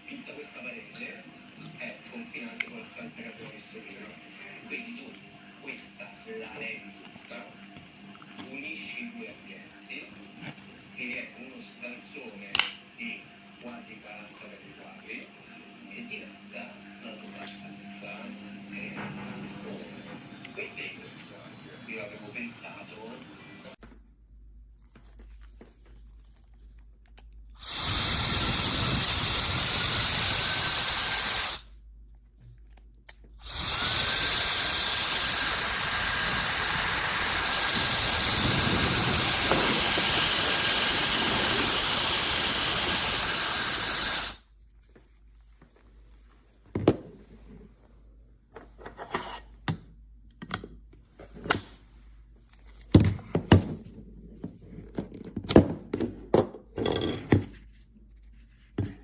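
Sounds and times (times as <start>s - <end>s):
hair dryer motor whining: 19.5s - 23.8s, 27.6s - 31.7s, 33.4s - 44.4s
rush of air: 35.3s - 43.8s.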